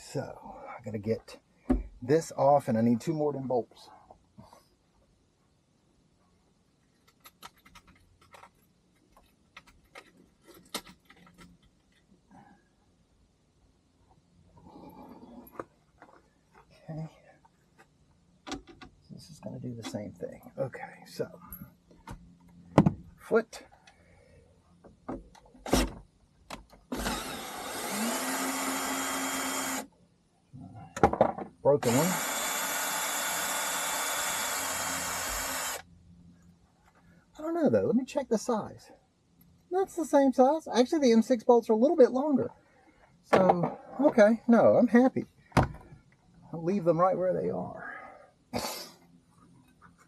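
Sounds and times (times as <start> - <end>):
power drill running: 26.9 - 29.9, 31.8 - 35.8.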